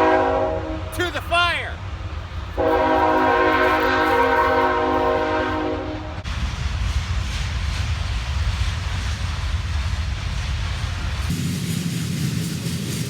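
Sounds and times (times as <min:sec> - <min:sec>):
train horn chord: 0:00.0 - 0:01.0, 0:02.6 - 0:06.2
train passing rumble: 0:00.0 - 0:13.0.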